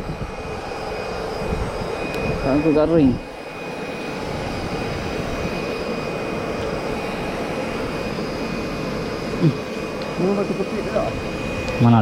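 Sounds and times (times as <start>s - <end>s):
faint high whine: 0.0s - 12.0s
mechanical drone: 0.0s - 12.0s.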